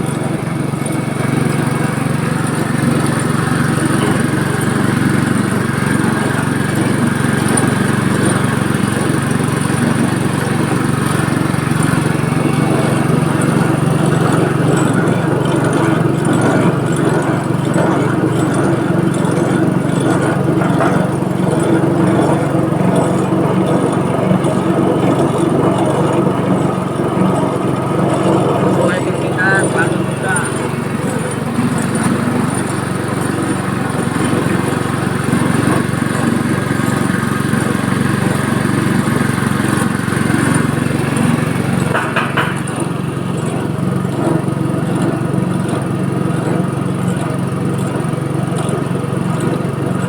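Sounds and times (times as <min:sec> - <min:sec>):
press machine motor drone: 0:00.0 - 0:50.0.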